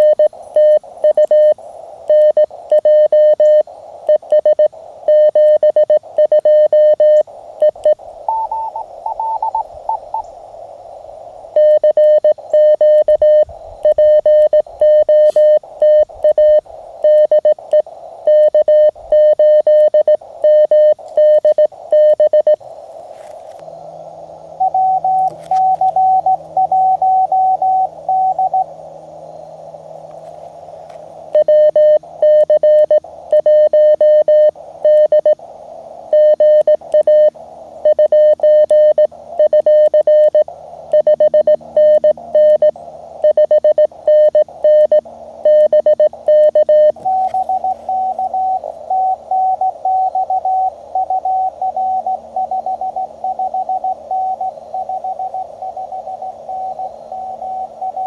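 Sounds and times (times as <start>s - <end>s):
morse code sidetone: 0.0s - 10.3s, 11.5s - 22.6s, 24.6s - 28.8s, 31.3s - 35.4s, 36.1s - 58.0s
radio band hiss: 0.0s - 58.0s.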